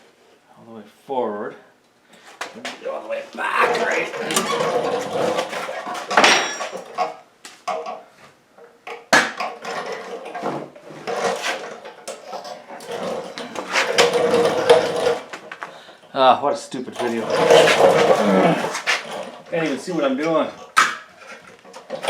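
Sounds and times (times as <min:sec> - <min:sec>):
things being handled: 0:03.3 - 0:07.1.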